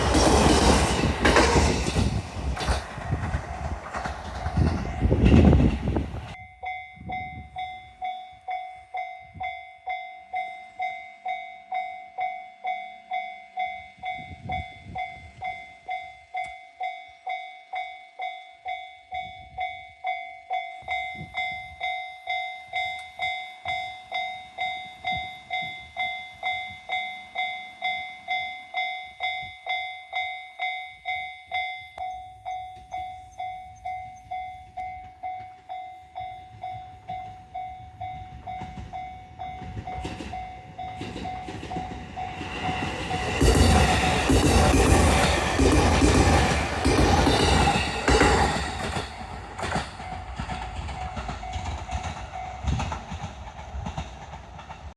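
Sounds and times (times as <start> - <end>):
train rumbling: 0.0 - 9.6, 30.6 - 54.9
level crossing warning bell ringing: 0.0 - 53.5.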